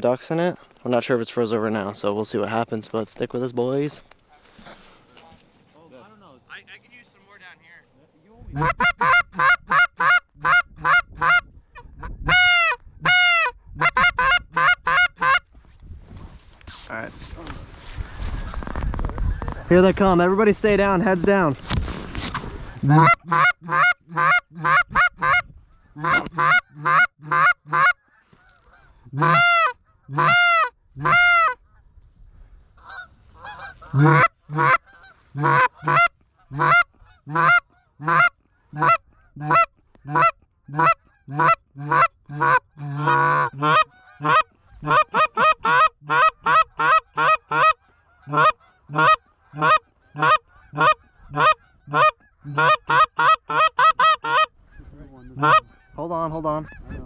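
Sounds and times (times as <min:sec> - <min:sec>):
goose calls honking: 0:08.5 - 0:11.4, 0:12.0 - 0:15.4, 0:22.7 - 0:31.6, 0:32.8 - 0:56.0
goose call moans: 0:22.8 - 0:31.6, 0:32.8 - 0:56.0.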